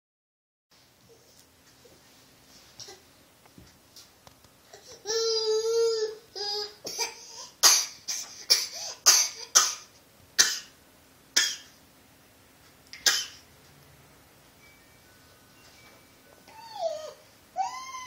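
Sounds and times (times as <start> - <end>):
child fake coughing: 6.9 - 10.8, 11.4 - 11.7, 13.0 - 13.4.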